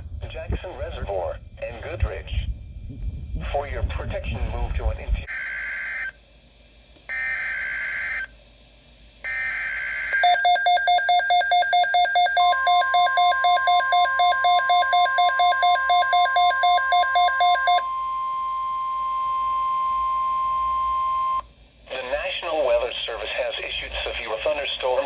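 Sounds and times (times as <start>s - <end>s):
steady warning tone: 7.1s - 8.4s, 9.2s - 21.4s
data tone bursts: 9.3s - 21.4s.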